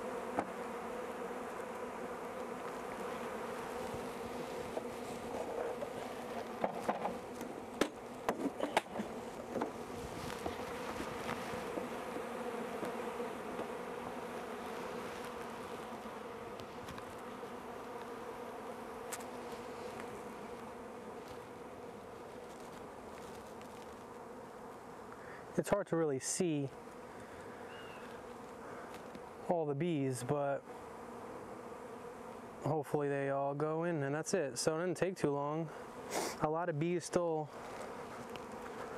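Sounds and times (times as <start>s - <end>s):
honeybees buzzing: 0.0s - 38.9s.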